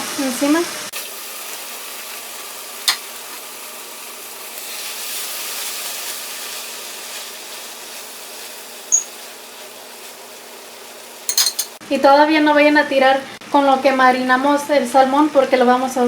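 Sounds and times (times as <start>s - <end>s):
fish sizzling in a frying pan: 0.1s - 11.8s
high-pitched squeak: 8.9s - 9.2s.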